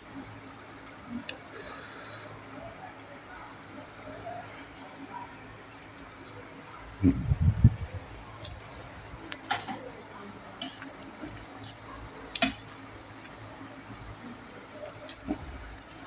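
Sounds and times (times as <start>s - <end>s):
mouth clicks and smacks: 15.0s - 16.0s.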